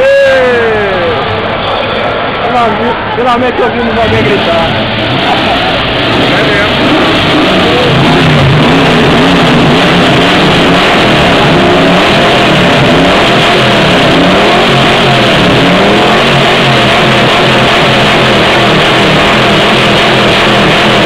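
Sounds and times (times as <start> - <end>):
car engine revving: 0.3 - 21.0.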